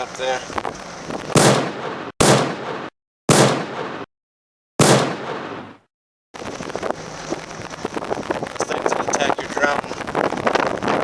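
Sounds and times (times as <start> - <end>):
outdoor ambience: 0.0 - 4.1, 6.4 - 11.0
gunshots with echo: 1.4 - 4.1, 4.8 - 5.9.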